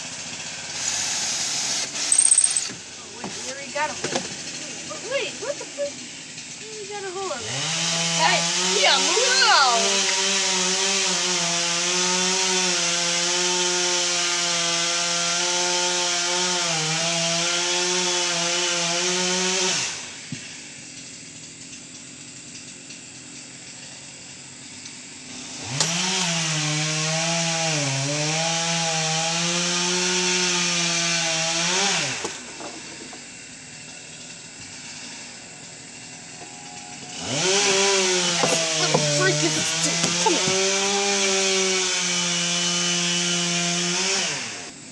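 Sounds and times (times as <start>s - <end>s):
electric drill whining: 0.8s - 4.3s, 35.2s - 41.4s.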